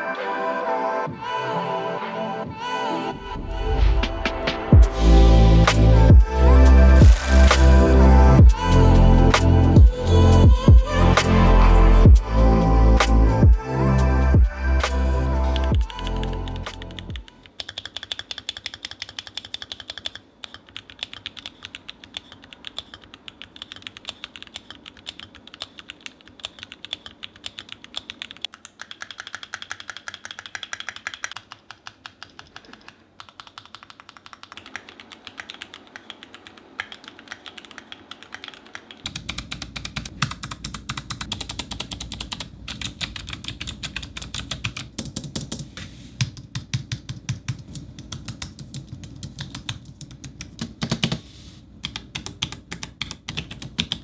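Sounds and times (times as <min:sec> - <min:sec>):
background music: 0:00.0 - 0:17.4
mechanical keyboard typing: 0:16.7 - 0:51.2, 0:51.8 - 0:54.0.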